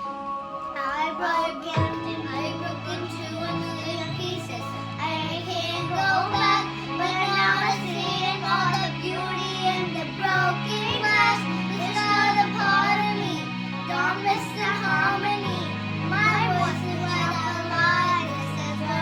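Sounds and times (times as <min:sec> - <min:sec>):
children singing pop song: 0:00.7 - 0:19.0
backing track with bass notes: 0:01.8 - 0:19.0.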